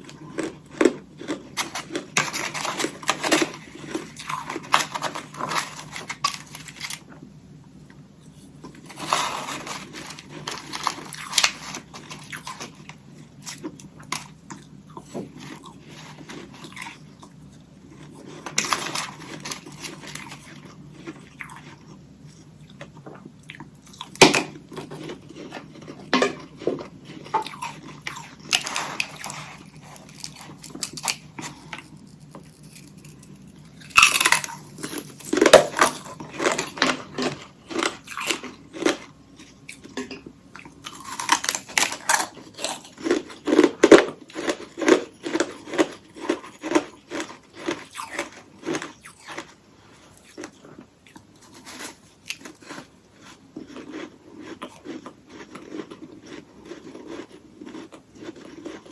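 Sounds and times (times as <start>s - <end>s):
crunchy chewing: 0.0s - 7.2s, 7.9s - 58.9s
faint low hum: 0.0s - 58.9s
ice crunching bites: 0.4s - 7.0s, 8.8s - 14.3s, 18.4s - 21.2s, 27.1s - 39.1s.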